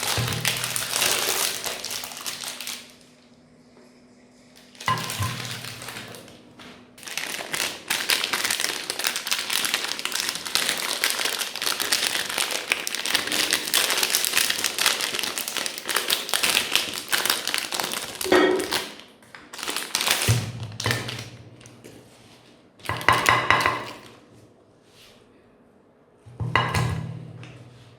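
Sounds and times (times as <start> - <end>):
meat grinder crunching ice cream: 0.0 - 3.0, 7.0 - 21.2.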